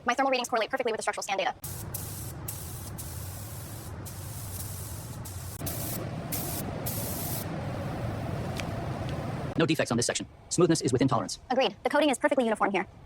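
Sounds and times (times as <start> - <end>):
spray gun hissing: 1.6 - 9.6
steady low hum: 1.6 - 10.6.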